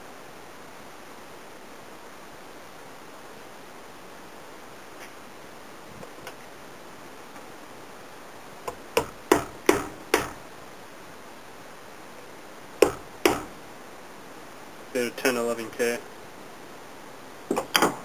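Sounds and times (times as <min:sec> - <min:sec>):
small hammer striking metal: 0:08.7 - 0:10.4, 0:12.8 - 0:13.6.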